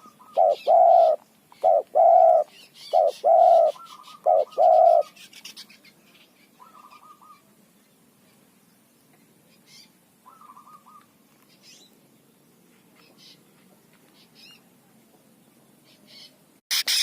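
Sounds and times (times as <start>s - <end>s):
dove cooing: 0.0s - 5.2s, 6.6s - 7.5s, 10.3s - 11.1s
small birds chattering chirps: 0.0s - 14.7s.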